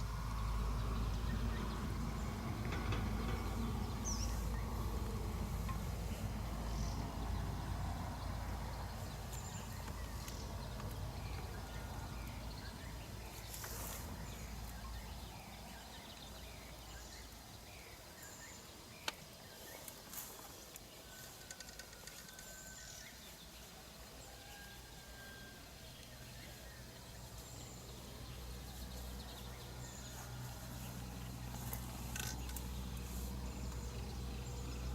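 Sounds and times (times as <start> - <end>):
low wind-like rumble: 0.0 - 13.4.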